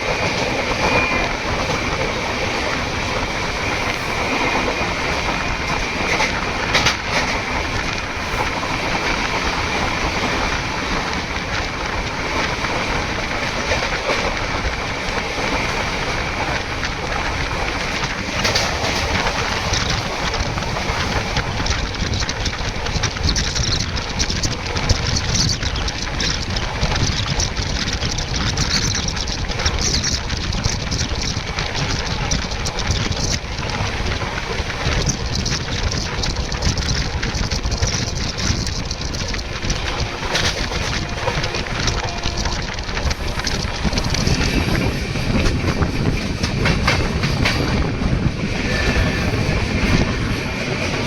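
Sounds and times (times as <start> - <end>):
train wheels rolling on rails: 0.0 - 51.0.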